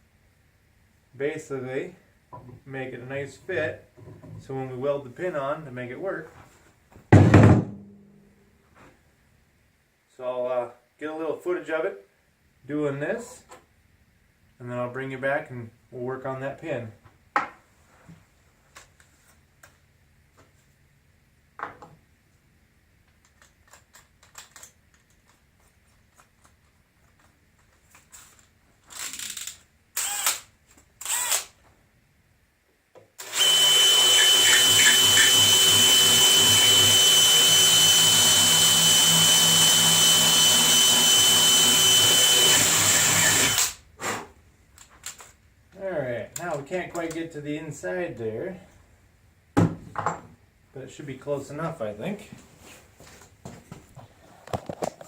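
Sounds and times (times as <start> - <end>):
electric drill whining: 30.0 - 30.4, 31.0 - 31.5, 33.2 - 43.8.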